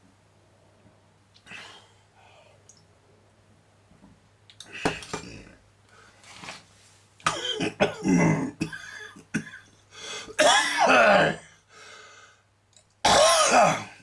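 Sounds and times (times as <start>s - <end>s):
low electrical hum: 0.0s - 14.0s
man coughing: 7.3s - 9.7s, 10.4s - 11.4s, 13.1s - 14.0s.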